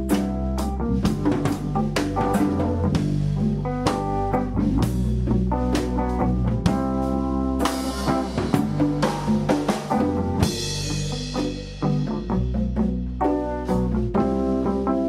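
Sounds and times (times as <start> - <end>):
jazz band playing: 0.0 - 15.0.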